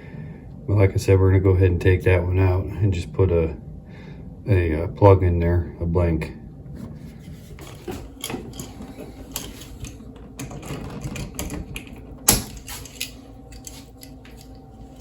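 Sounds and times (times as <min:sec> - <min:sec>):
small electrical parts clicking: 0:07.6 - 0:15.0
wires pulled from connectors: 0:12.7 - 0:15.0.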